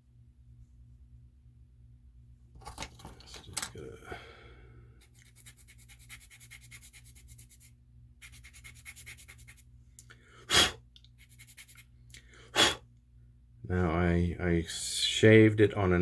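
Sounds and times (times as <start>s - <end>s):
puff of breath: 10.1s - 10.8s, 12.2s - 12.8s.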